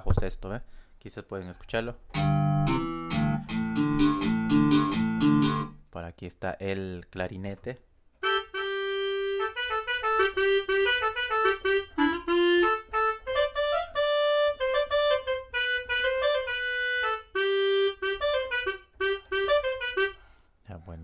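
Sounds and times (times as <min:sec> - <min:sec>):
clarinet melody: 0:02.1 - 0:05.8, 0:08.2 - 0:20.4.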